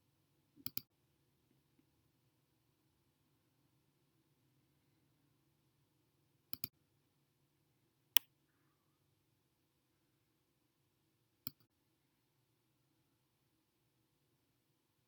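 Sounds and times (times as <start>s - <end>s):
computer mouse clicks: 0.6s - 0.9s, 6.5s - 6.7s, 11.4s - 11.7s.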